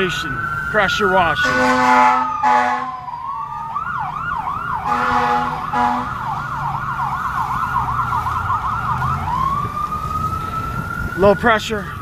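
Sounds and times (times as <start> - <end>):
emergency vehicle siren: 0.0 - 12.0
horn blasts: 1.4 - 2.9, 4.8 - 6.2.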